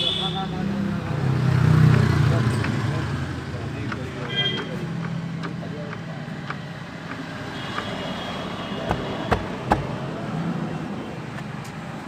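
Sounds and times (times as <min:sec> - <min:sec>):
car engine humming: 0:01.8 - 0:11.2
sharp knocks: 0:08.8 - 0:10.0.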